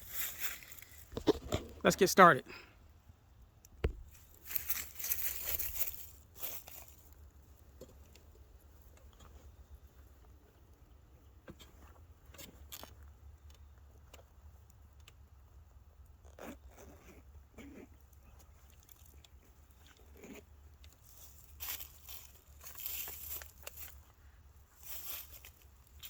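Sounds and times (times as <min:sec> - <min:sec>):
crunching and rustling: 0:00.0 - 0:01.8, 0:03.9 - 0:10.2, 0:16.2 - 0:26.0.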